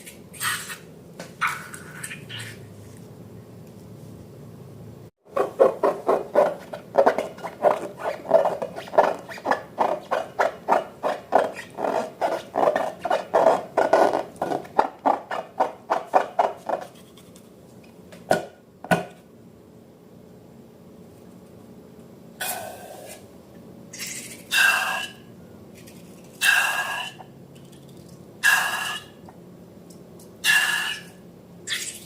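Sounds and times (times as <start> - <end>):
slime being mixed: 5.3 - 17.0.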